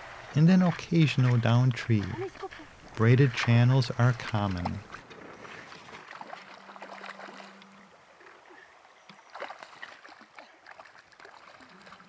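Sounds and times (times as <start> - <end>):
stream babbling over gravel: 0.0 - 12.0.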